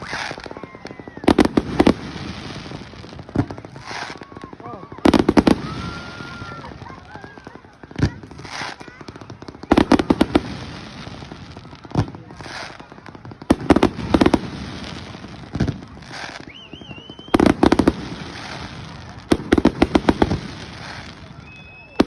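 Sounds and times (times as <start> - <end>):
fireworks crackling bangs: 0.0 - 22.0
firework rising whistle: 3.9 - 7.5, 16.0 - 19.0, 20.2 - 22.0.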